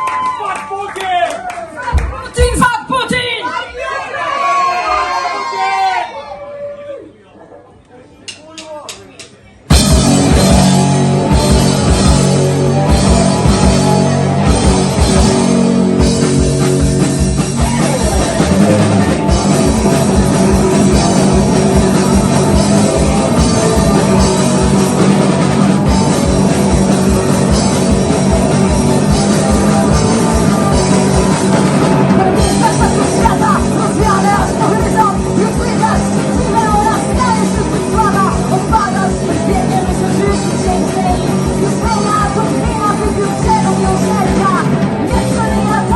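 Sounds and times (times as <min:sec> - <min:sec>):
driving drum beat: 0:01.9 - 0:03.2, 0:09.7 - 0:45.9
live rock band playing: 0:09.7 - 0:45.9.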